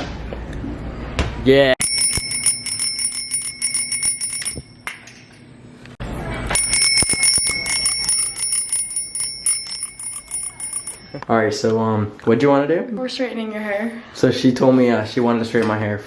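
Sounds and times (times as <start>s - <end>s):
alarm bell ringing rapidly: 1.8s - 4.9s, 6.5s - 11.2s.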